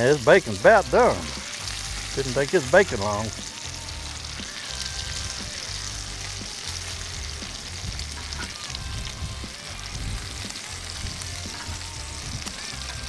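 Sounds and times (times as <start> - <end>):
food sizzling on a griddle: 0.0 - 13.0
wind rumbling on microphone: 8.8 - 10.4.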